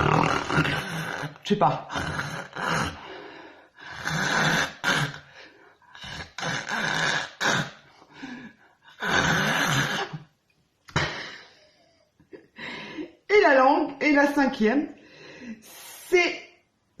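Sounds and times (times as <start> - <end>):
woman making harsh throat sounds: 0.0 - 3.2, 3.8 - 10.3, 10.9 - 11.5.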